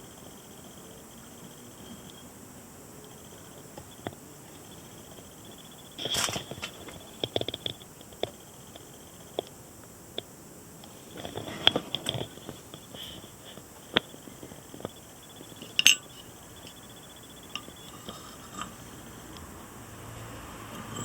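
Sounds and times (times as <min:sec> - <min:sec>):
hard objects clicking and knocking: 0:06.0 - 0:09.5, 0:11.1 - 0:18.8.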